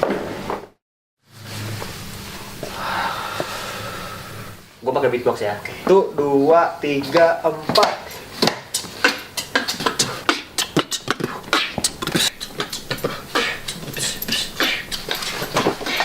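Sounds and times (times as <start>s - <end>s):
person beatboxing: 7.8s - 12.7s, 13.3s - 16.0s.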